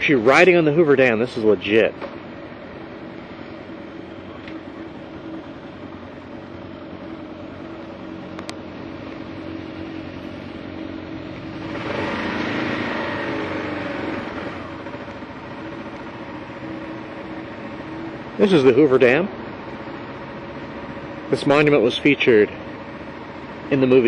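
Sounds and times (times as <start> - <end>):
motorcycle engine running: 0.0 - 24.0
rush of noise: 1.3 - 19.2.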